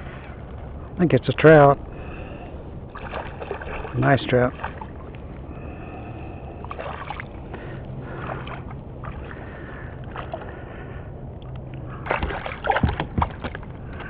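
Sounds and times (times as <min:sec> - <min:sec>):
low hum: 0:00.0 - 0:14.0
water sloshing against a kayak: 0:00.0 - 0:14.0
fish splashing at the surface: 0:02.3 - 0:05.1, 0:05.7 - 0:10.6, 0:12.0 - 0:14.0.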